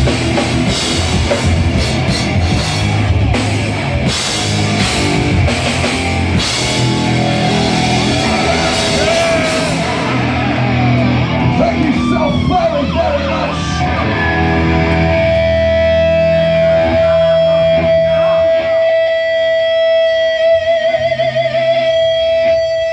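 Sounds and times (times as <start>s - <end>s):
drums and cymbals: 0.0s - 17.9s
distorted electric guitars: 0.0s - 22.9s
held electric guitar note: 6.0s - 21.8s.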